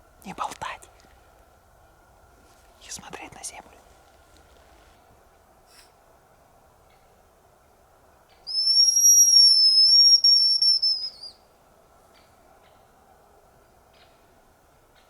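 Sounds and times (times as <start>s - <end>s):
high decoy whistle: 8.5s - 11.4s.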